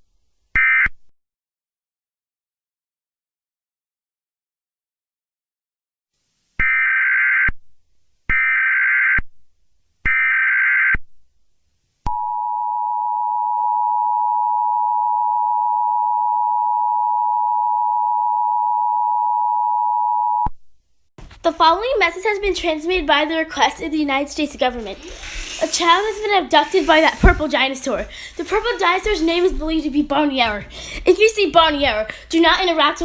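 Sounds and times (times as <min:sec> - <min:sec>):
harsh data bursts: 0:23.5 - 0:30.6.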